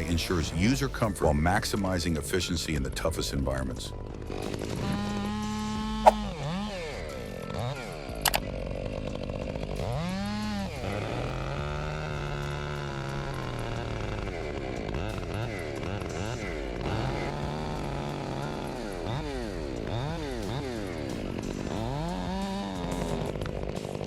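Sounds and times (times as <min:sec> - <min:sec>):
chainsaw revving: 0:19.9 - 0:24.0.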